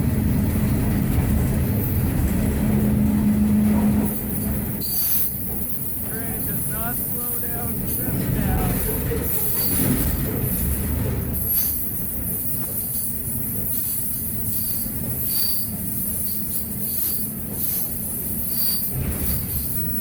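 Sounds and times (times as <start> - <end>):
train wheels rumbling on rails: 0.0 - 20.0
high-pitched wheel squeals: 3.9 - 11.9, 14.0 - 20.0.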